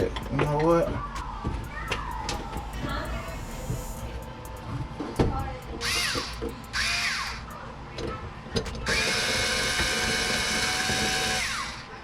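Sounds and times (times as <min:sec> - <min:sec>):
power drill whining: 0:08.9 - 0:12.0.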